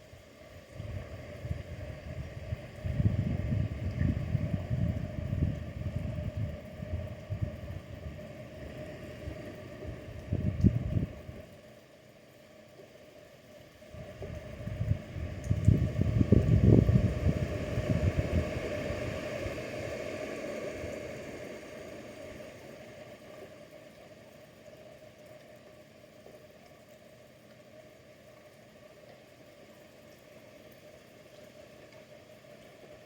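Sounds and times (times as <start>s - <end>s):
faint steady hiss: 0.0s - 33.0s.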